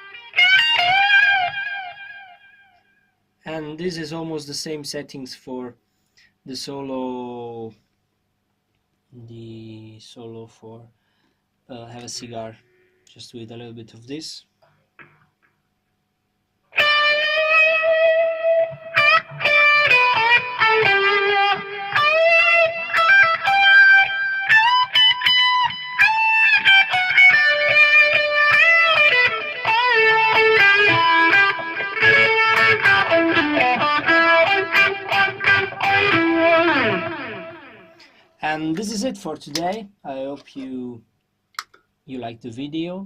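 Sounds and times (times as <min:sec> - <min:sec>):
overdriven electric guitar solo: 0:00.0 - 0:02.8, 0:16.7 - 0:38.2.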